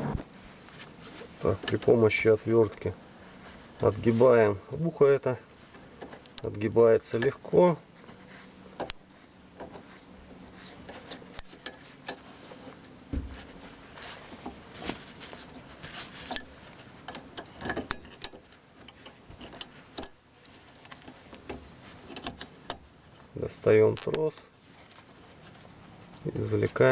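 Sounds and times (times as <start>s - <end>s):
dull knock: 13.1s - 13.4s.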